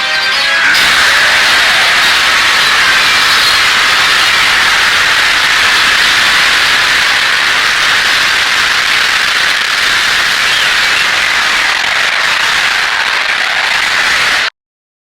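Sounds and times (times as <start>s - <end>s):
television static hiss: 0.8s - 14.5s.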